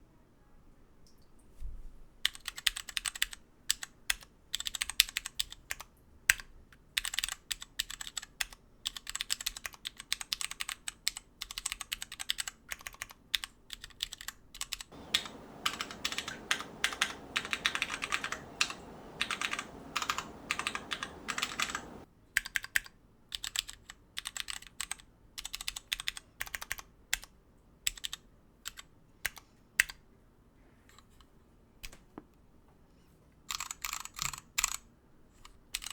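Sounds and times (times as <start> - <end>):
keyboard key clacks: 14.9 - 22.0
steady hiss: 14.9 - 22.0.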